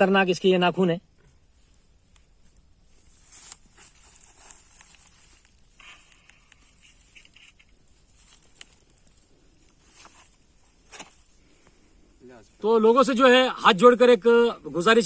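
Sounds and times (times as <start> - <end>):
rustling handling noises: 1.2 - 11.8.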